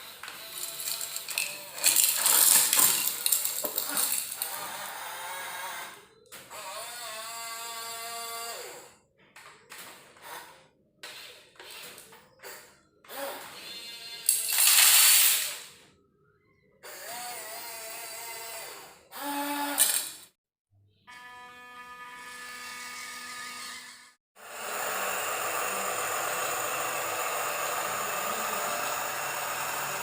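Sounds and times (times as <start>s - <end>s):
small electric motors whirring: 0.0s - 8.9s, 21.7s - 30.0s.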